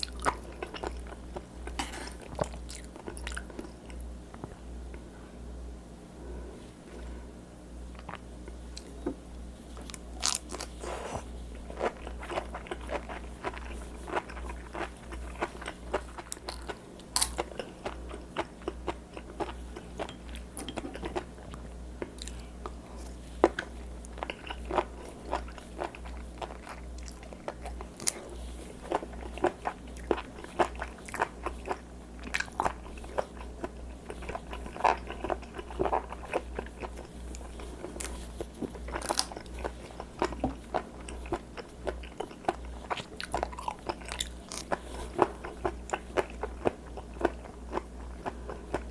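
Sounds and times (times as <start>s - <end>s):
chewing crunchy food: 0.0s - 4.5s, 9.7s - 48.9s.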